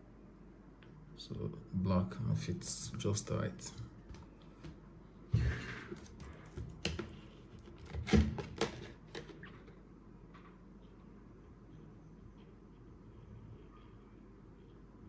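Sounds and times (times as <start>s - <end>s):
clicks and taps of handling items: 6.0s - 9.5s.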